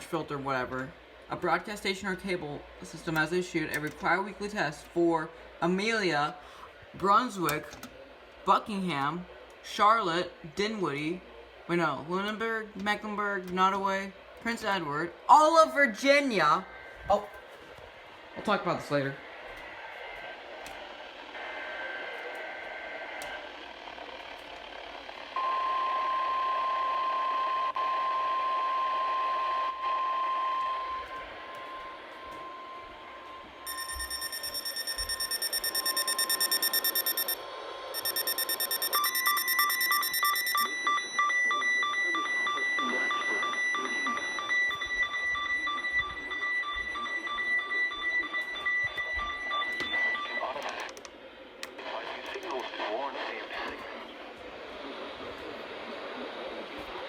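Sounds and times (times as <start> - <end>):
steady warning alarm tone: 22.7 - 50.6
short electronic beeps: 33.7 - 37.4, 38.0 - 50.4
two-tone digital warble: 33.7 - 37.4, 38.0 - 50.4
radio hiss: 38.0 - 57.0.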